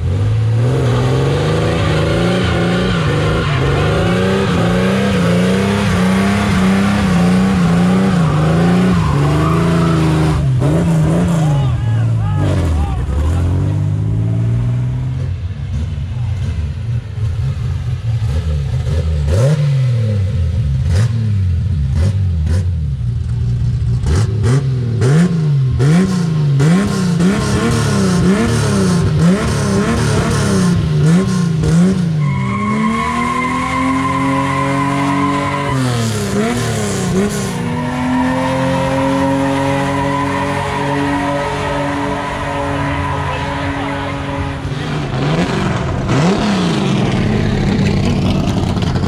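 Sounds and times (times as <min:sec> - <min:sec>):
car engine revving: 0:00.0 - 0:49.0
exhaust cracks: 0:45.0 - 0:49.0.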